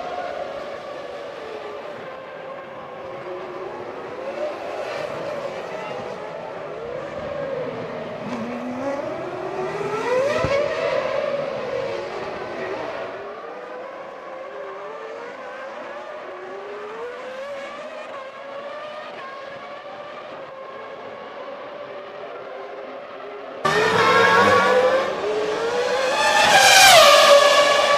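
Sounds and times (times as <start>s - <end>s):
racing car engines revving: 3.0s - 27.9s.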